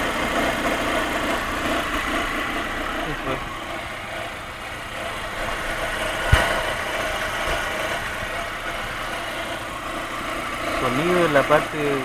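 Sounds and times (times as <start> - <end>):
car engine idling: 0.0 - 12.0
sharp knock: 6.2 - 6.8.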